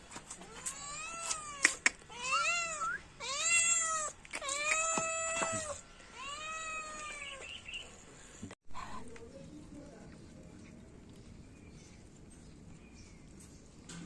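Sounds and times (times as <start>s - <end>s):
cat meowing: 0.4s - 7.5s.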